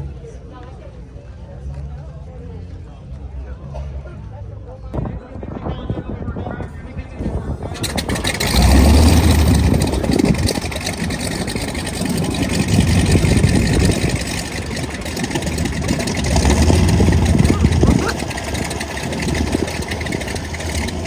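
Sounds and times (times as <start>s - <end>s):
propeller aircraft engine running: 7.2s - 21.0s.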